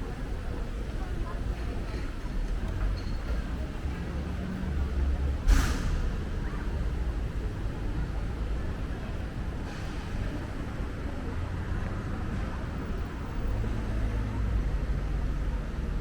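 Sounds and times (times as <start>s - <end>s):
passing vehicles rumbling: 0.0s - 16.0s
short hiss: 5.5s - 6.2s.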